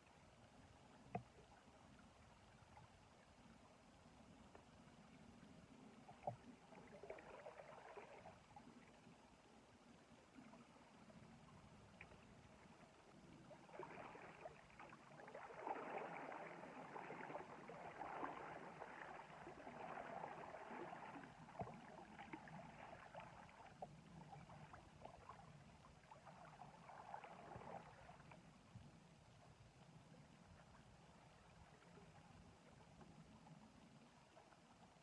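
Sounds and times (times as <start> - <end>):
water sloshing and gurgling: 0.1 - 35.0.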